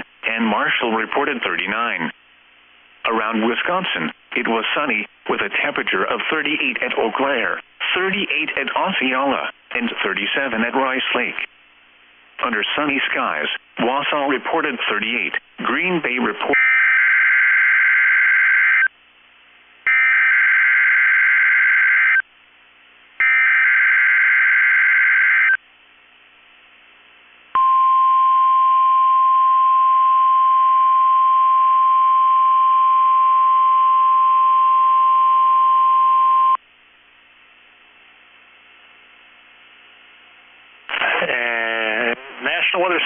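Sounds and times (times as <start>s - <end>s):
steady alarm tone: 19.9s - 22.2s, 23.2s - 25.6s.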